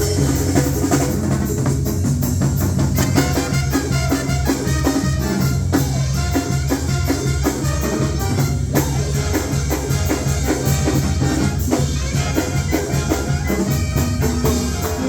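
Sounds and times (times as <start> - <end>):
drum kit and percussion beat: 0.0 - 15.0
heavy bass: 0.0 - 15.0.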